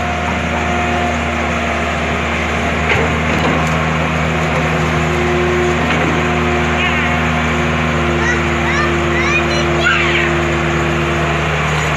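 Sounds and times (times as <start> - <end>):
excavator diesel engine running: 0.0 - 11.9.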